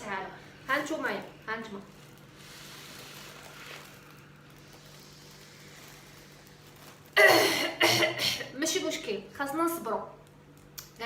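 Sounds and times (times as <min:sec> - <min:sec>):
faint steady breathing: 0:02.2 - 0:07.0.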